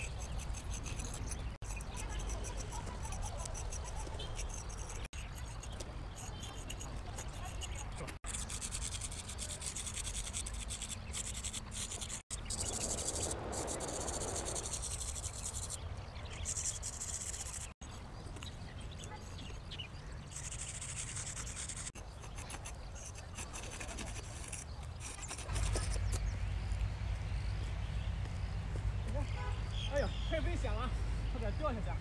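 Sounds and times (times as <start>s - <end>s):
scratchy drawing on rough surface: 0.0s - 17.8s, 20.2s - 26.4s
high insect-like buzz: 7.7s - 17.8s.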